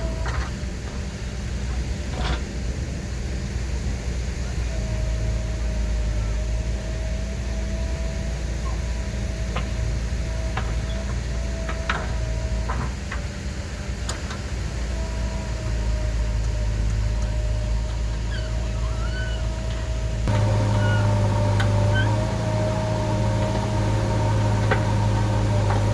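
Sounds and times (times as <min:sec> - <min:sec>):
diesel engine running with whine: 0:00.0 - 0:25.9.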